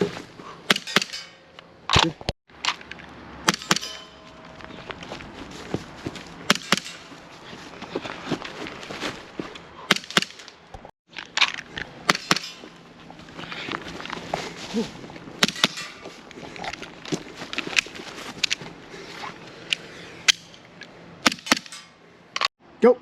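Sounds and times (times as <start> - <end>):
footsteps: 3.8 - 9.8, 11.5 - 19.9.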